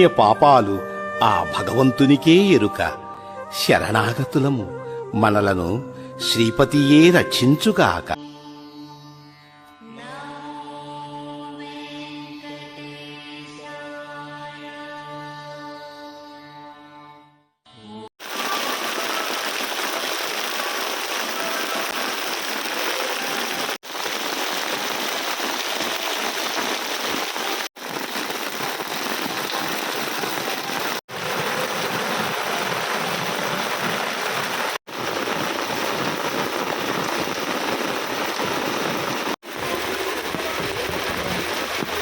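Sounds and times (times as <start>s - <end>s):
heavy rain pouring: 18.2s - 42.0s.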